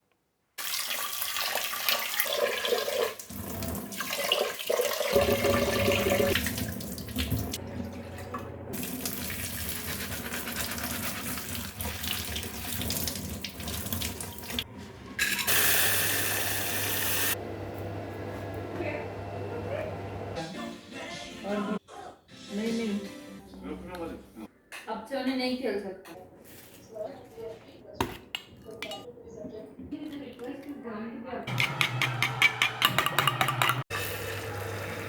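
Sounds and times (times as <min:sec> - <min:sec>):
tap water running into sink: 0:00.6 - 0:17.4.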